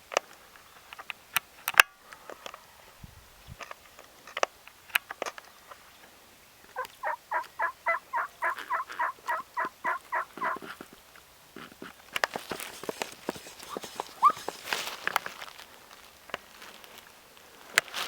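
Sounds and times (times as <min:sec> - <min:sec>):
turkey yelps: 0:06.7 - 0:10.7, 0:13.6 - 0:14.7.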